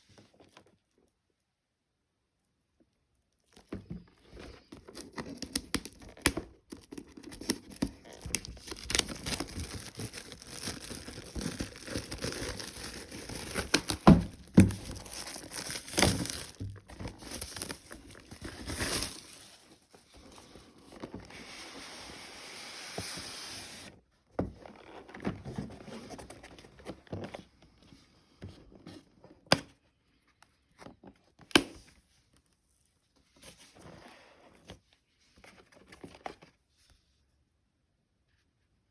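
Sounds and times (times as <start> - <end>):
plastic shrink-wrap crinkling: 4.8 - 19.9
shrink-wrap tearing: 4.9 - 19.6.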